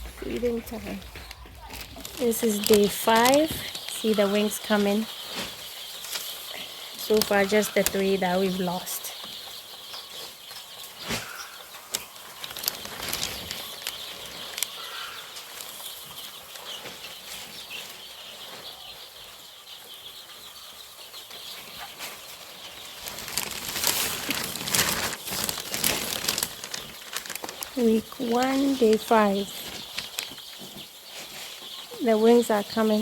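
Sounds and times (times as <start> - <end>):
chicks peeping: 0.0 - 33.0
rustling scuffle: 21.9 - 31.8.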